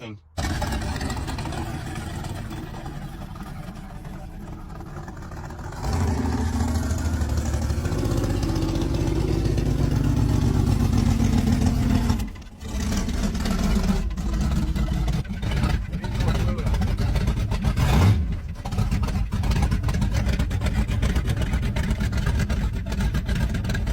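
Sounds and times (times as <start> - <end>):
car engine revving: 0.3 - 23.9.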